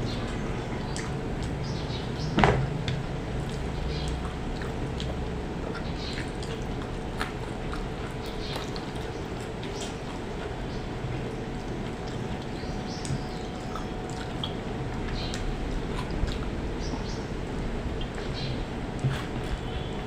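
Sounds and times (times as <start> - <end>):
chewing: 0.0 - 17.2, 18.0 - 19.7
faint hum: 0.0 - 20.0
sharp knock: 2.4 - 2.7.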